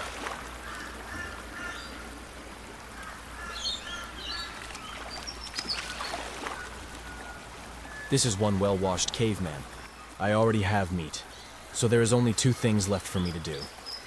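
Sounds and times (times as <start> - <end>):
birds chirping: 2.9 - 14.0.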